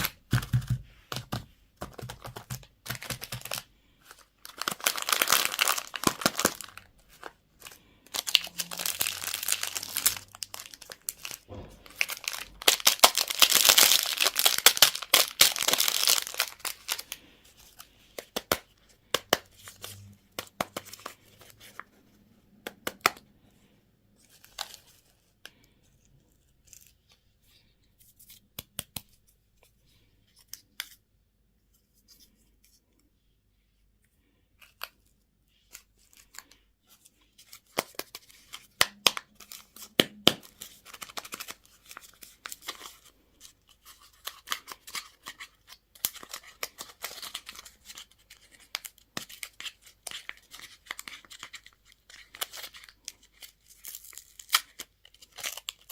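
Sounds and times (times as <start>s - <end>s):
wrapper tearing and crinkling: 2.3s - 3.7s, 4.4s - 17.2s, 43.8s - 55.9s.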